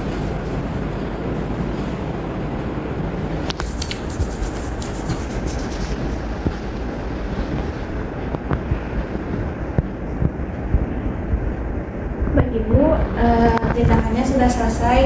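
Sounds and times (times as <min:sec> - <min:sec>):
low background rumble: 0:00.0 - 0:15.0
rustling: 0:03.4 - 0:06.9.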